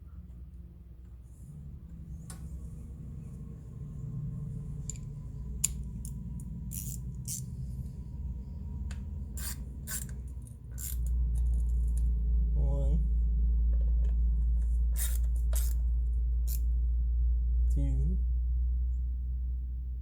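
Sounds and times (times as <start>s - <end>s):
steady low hum: 0.0s - 20.0s
metallic tool clicks and scrapes: 5.6s - 7.5s, 9.4s - 12.0s, 15.0s - 15.8s.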